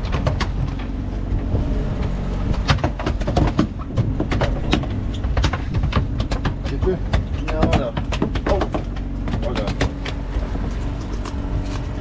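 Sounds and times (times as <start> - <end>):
steady low rumble: 0.0 - 12.0
wind buffeting microphone: 0.0 - 12.0
sharp knocks: 2.6 - 10.2.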